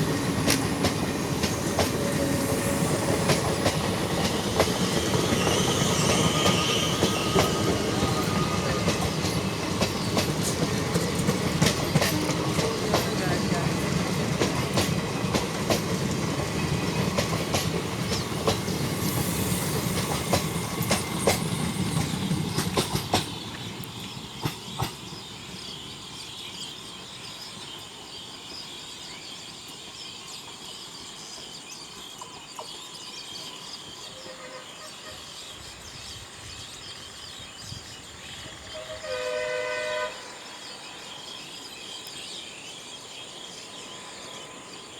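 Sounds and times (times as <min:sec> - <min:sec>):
train wheels clicking over rail joints: 0:00.0 - 0:25.5
train horn: 0:34.0 - 0:35.5, 0:38.5 - 0:40.6.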